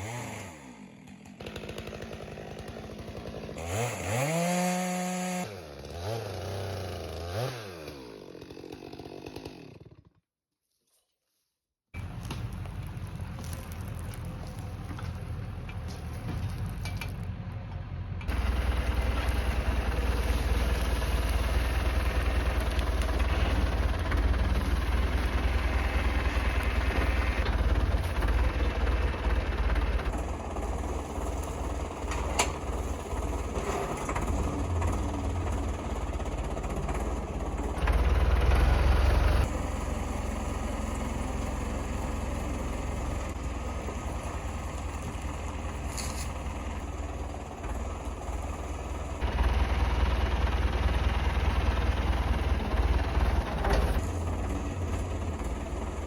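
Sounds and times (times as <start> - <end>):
vehicle engine droning: 12.0 - 56.0.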